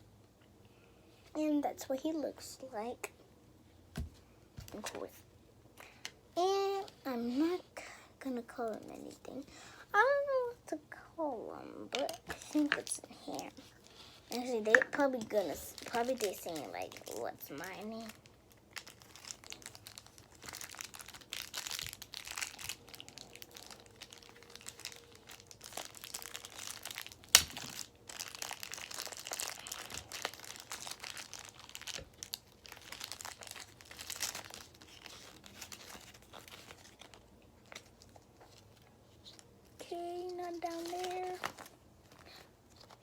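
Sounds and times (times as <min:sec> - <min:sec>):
toy packaging crinkling: 0:11.9 - 0:43.0.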